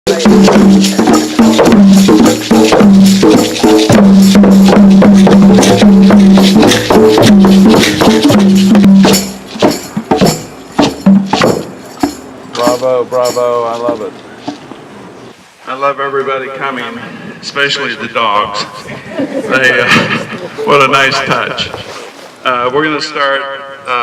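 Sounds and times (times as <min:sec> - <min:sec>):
hand drums playing: 0:00.1 - 0:14.1
jingling percussion: 0:00.1 - 0:14.7.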